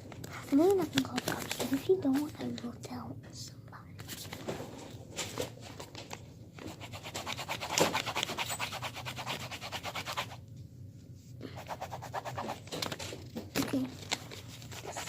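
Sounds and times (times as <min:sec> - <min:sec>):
pen scribbling on paper: 0:06.7 - 0:10.4, 0:11.6 - 0:12.6, 0:14.6 - 0:15.0.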